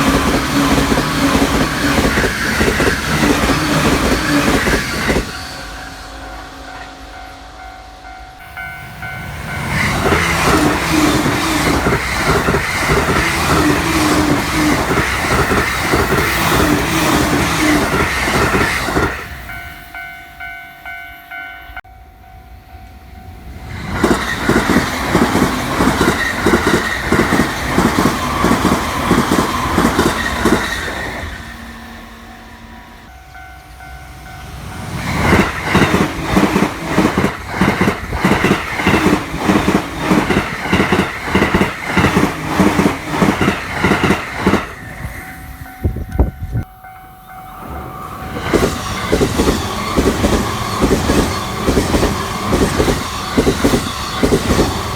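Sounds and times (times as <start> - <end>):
electric trains passing at high speed: 0.0 - 54.9
level-crossing warning bell: 0.0 - 54.9
wheels clattering over rail joints: 9.4 - 19.3, 34.7 - 45.4, 48.0 - 54.9.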